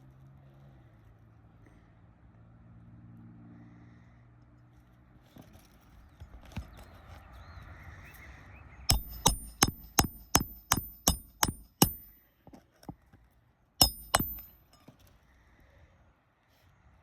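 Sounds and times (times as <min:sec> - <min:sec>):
hammer driving nails: 0:08.9 - 0:12.6, 0:13.8 - 0:14.6.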